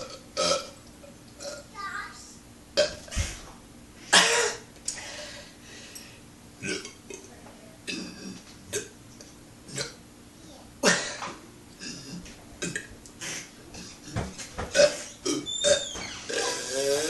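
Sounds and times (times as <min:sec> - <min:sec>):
man belching: 0:00.0 - 0:00.8, 0:01.4 - 0:01.6, 0:06.6 - 0:07.2, 0:07.9 - 0:08.9, 0:09.7 - 0:10.0, 0:11.8 - 0:12.9, 0:13.7 - 0:17.0.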